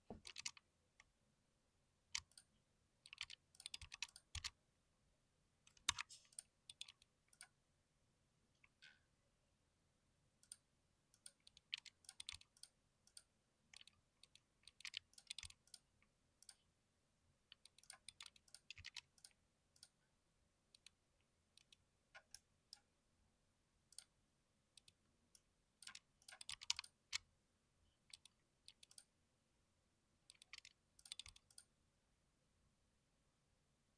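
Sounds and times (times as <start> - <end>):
computer keyboard typing: 0.2 - 0.6, 2.2 - 4.6, 11.3 - 12.7, 13.8 - 15.8, 17.5 - 20.0, 25.8 - 27.2, 28.1 - 29.1, 30.3 - 31.7.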